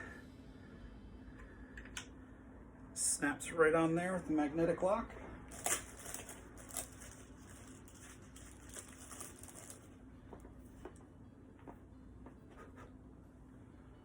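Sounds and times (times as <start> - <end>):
packaging rustling and crinkling: 5.5 - 10.4.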